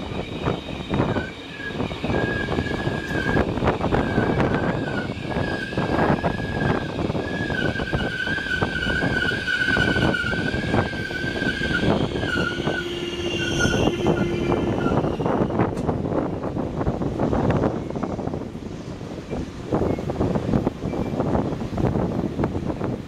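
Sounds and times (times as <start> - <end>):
steel wheel squeal: 0.0 - 15.9
train clattering rumble: 0.0 - 23.0.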